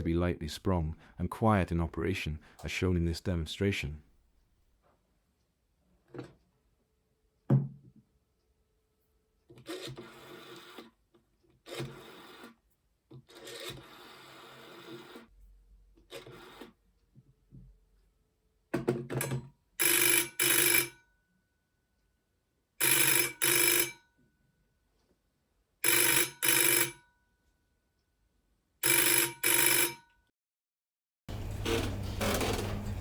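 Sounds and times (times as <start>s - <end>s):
telephone bell ringing: 19.8s - 21.1s, 22.8s - 24.2s, 25.8s - 27.1s, 28.8s - 30.2s.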